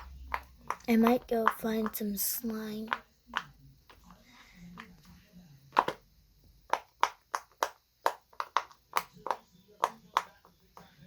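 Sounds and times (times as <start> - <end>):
fidget toy bubbles popping: 0.0 - 4.1, 6.6 - 10.9.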